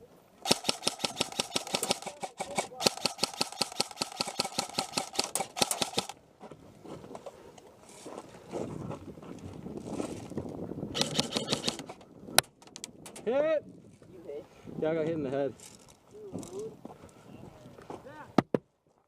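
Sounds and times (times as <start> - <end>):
airsoft gun firing full-auto: 0.4 - 6.2, 11.0 - 11.8.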